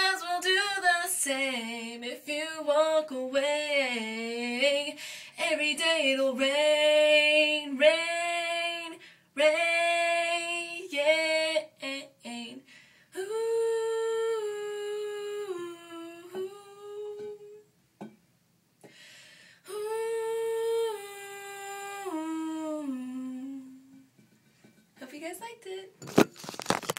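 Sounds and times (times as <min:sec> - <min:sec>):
breath: 0:05.0 - 0:05.4, 0:09.0 - 0:09.3, 0:12.6 - 0:13.2, 0:18.8 - 0:19.7
woman humming melody: 0:13.5 - 0:17.6, 0:19.7 - 0:24.0.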